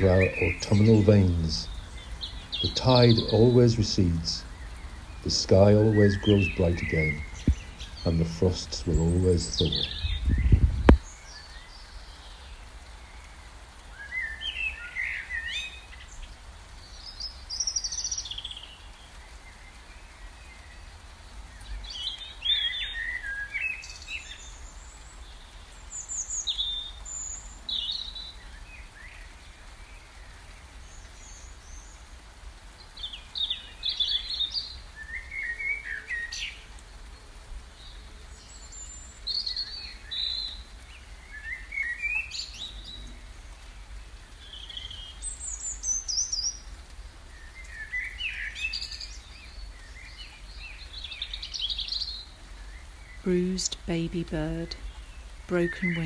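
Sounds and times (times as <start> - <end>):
songbirds singing and chirping: 0.0 - 56.0.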